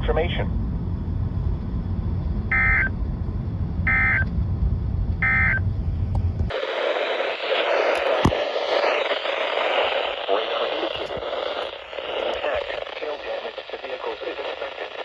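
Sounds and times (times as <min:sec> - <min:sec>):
low rumble: 0:00.0 - 0:12.9
warbling digital data tones: 0:02.5 - 0:02.9, 0:03.9 - 0:04.3, 0:05.2 - 0:05.6
radio hiss: 0:06.5 - 0:15.0.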